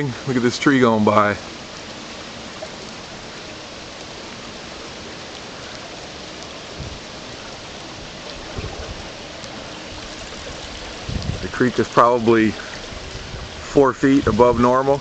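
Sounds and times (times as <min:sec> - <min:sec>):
creek water rushing: 0:00.0 - 0:15.0
light rain falling: 0:00.0 - 0:15.0
low bumps: 0:06.6 - 0:15.0.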